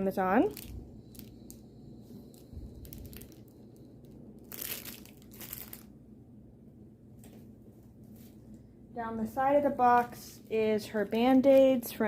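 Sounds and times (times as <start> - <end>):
packaging crinkling: 0.4 - 6.0.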